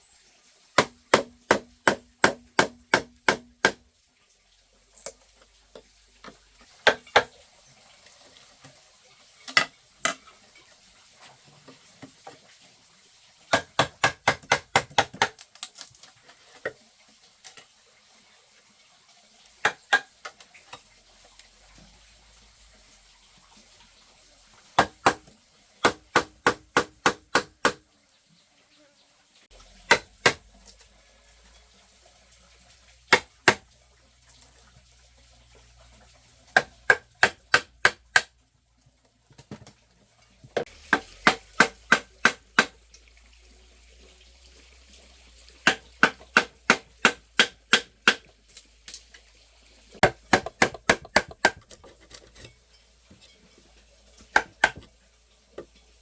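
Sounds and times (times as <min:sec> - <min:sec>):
tool striking bamboo: 0:00.8 - 0:03.8, 0:06.8 - 0:07.4, 0:13.5 - 0:15.4, 0:19.6 - 0:20.1, 0:24.8 - 0:27.8, 0:29.9 - 0:30.5, 0:33.1 - 0:33.6, 0:36.5 - 0:38.3, 0:40.6 - 0:42.8, 0:45.6 - 0:48.3, 0:50.0 - 0:51.9, 0:54.3 - 0:54.9.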